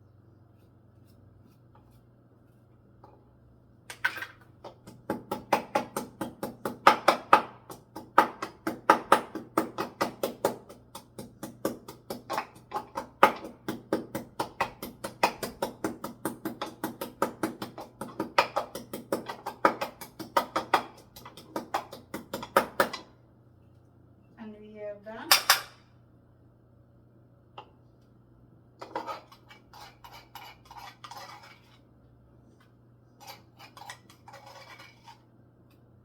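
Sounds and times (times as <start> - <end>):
pestle pounding in a mortar: 4.6 - 23.1.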